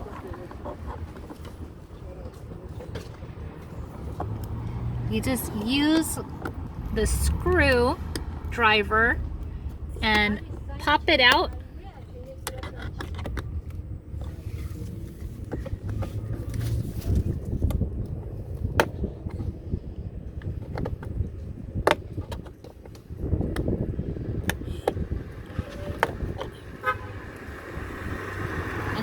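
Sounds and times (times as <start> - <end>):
sharp clicks and knocks: 5.2 - 14.3.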